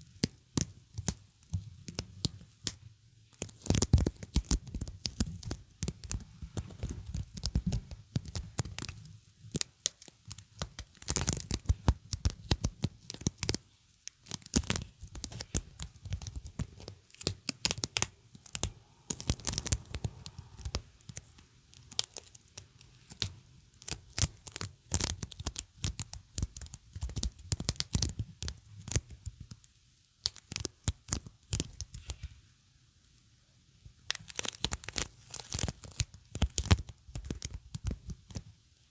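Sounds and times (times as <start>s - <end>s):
sticky material peeled apart: 34.1s - 37.6s.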